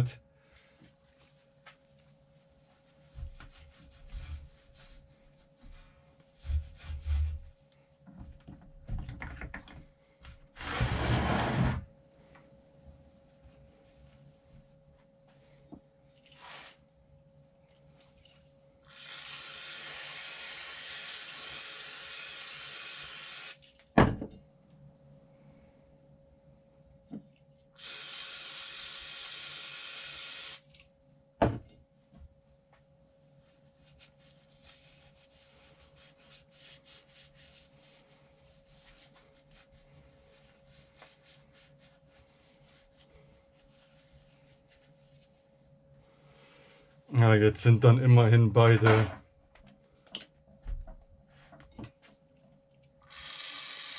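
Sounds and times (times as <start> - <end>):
sharp knock of object set down: 31.4 - 31.7.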